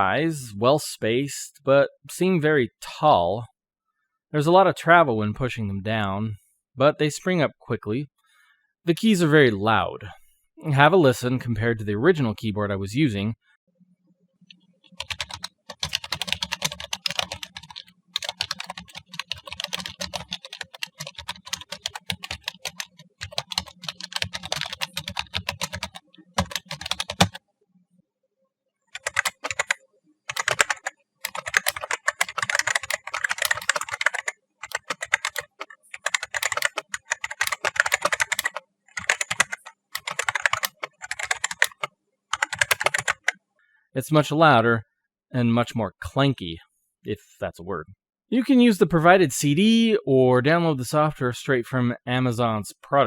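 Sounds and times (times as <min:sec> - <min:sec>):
rapid keyboard typing: 0:14.9 - 0:27.4, 0:29.0 - 0:43.4.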